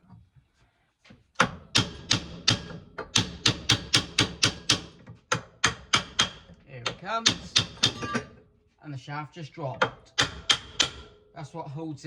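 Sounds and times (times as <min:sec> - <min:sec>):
hammer knocking on metal: 0:07.2 - 0:08.3.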